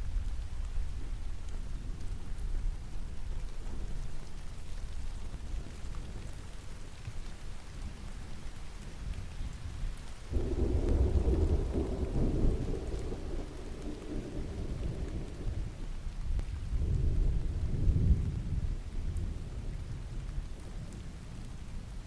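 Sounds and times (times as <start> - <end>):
steady rain: 0.0 - 22.0
thunder rumbling: 10.3 - 20.6.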